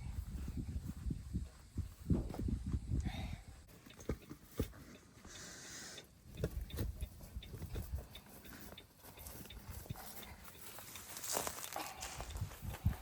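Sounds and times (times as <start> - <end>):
footsteps: 0.0 - 3.0, 6.4 - 13.0.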